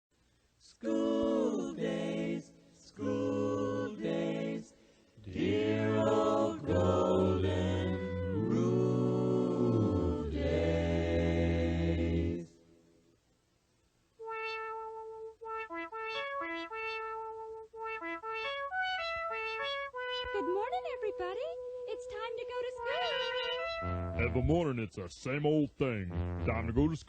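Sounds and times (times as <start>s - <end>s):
group singing in harmony: 0.7s - 12.6s.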